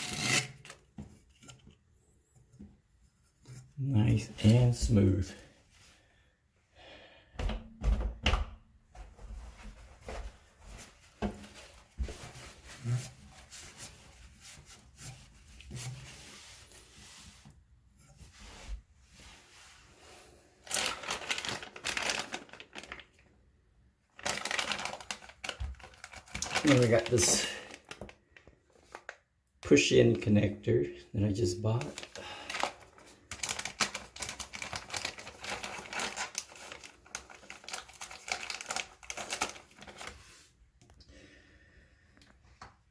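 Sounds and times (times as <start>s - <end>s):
rustling: 20.6s - 23.2s.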